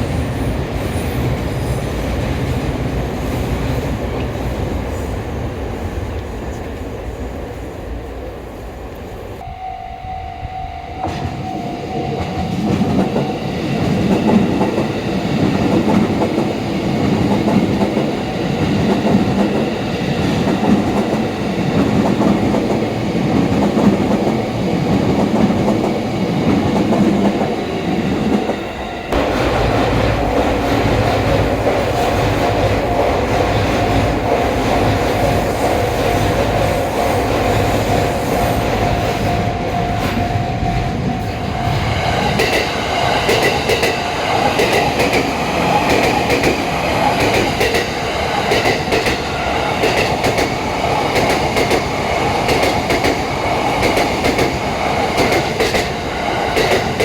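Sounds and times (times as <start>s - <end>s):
train wheels clattering over rails: 12.0s - 57.0s.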